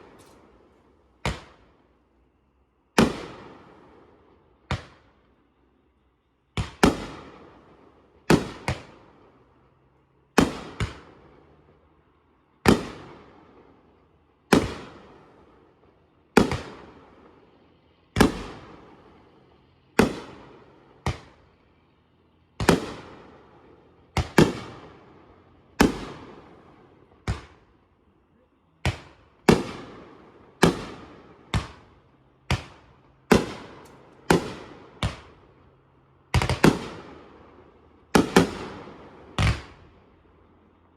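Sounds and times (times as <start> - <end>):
fireworks bangs: 8.3 - 9.0, 12.7 - 13.5, 14.5 - 15.4, 16.3 - 21.5, 22.6 - 27.7, 28.8 - 35.6, 36.3 - 39.9.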